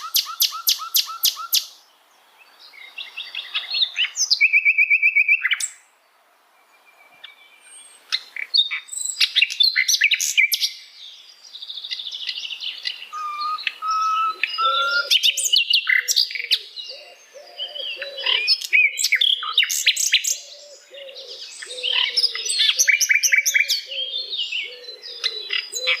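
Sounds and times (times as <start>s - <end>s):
repeated lower bird notes: 0.0s - 1.7s, 11.9s - 26.0s
flycatcher singing: 11.8s - 26.0s.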